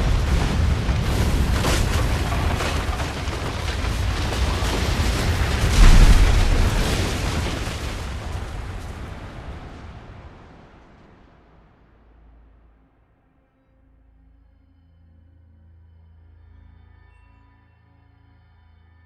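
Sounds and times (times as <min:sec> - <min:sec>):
crashing and cracking: 0:00.0 - 0:11.2
heavy boom: 0:00.0 - 0:11.9
deep earthquake rumble: 0:00.0 - 0:12.6.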